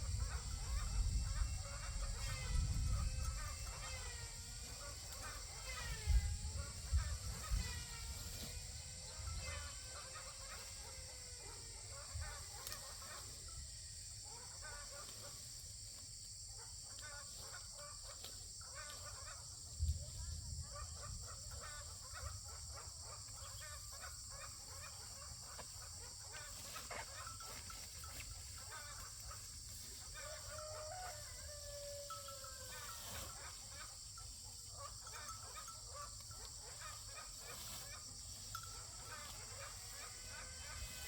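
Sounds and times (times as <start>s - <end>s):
chickens clucking: 20.7s - 41.0s
rooster crowing: 30.1s - 33.2s.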